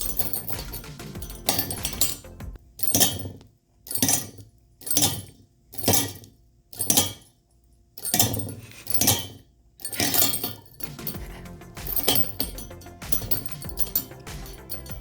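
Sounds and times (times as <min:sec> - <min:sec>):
small metal bell jingling: 0:00.0 - 0:02.2, 0:09.9 - 0:15.0.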